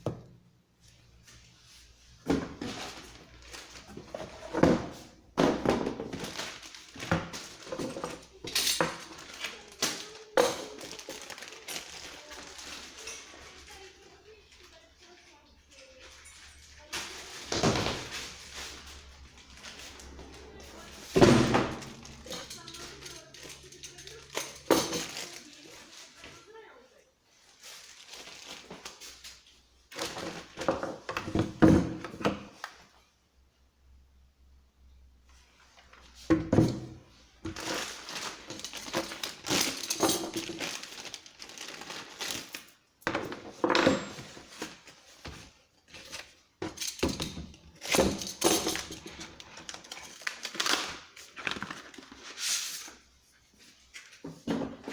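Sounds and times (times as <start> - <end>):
knocks and clatters of handling: 0.9 - 26.4, 27.5 - 32.9, 35.7 - 54.9
handling knocks clunks and rustles: 2.2 - 12.0, 30.0 - 32.6, 54.1 - 54.9.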